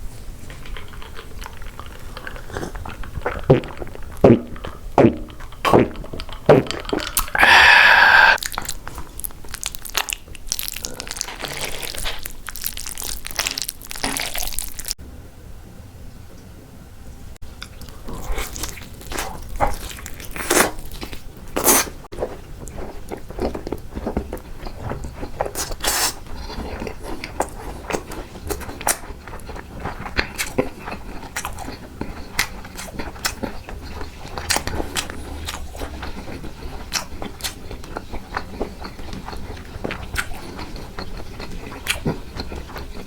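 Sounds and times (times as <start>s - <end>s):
person chewing food: 0.5s - 15.0s, 17.6s - 43.0s
wet mouth clicks and smacks: 40.1s - 40.4s.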